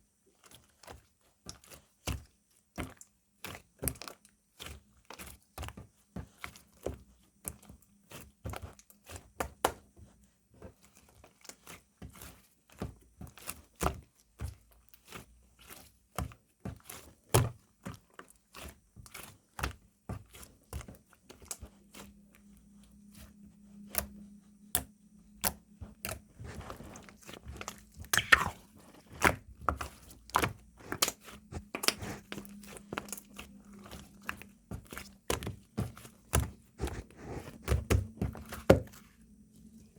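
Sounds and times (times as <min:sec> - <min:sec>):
slime squeezed by hand: 0:28.0 - 0:28.7.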